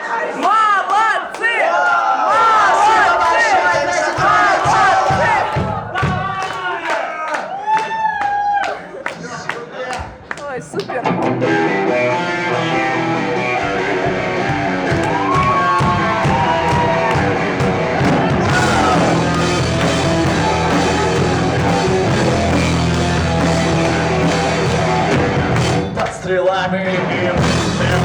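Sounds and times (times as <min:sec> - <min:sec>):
guitar lead with sliding notes: 0:11.0 - 0:26.0
live rock band playing: 0:11.0 - 0:26.0, 0:27.3 - 0:28.0.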